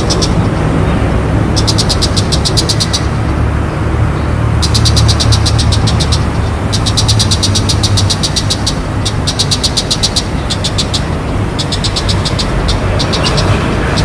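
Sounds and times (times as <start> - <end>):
bird calling rapid high notes: 1.6 - 3.2, 4.6 - 14.0.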